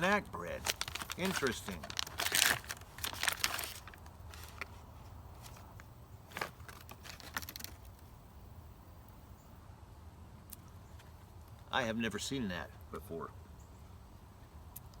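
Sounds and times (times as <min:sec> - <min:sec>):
plastic pouch crinkling: 0:00.4 - 0:08.1.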